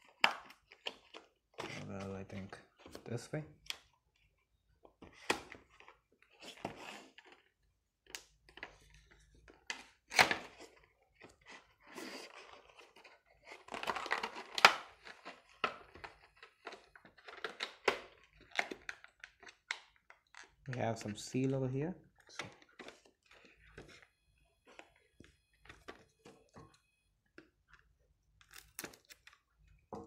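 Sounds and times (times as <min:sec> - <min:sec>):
packaging rustling and crinkling: 0:10.4 - 0:26.7.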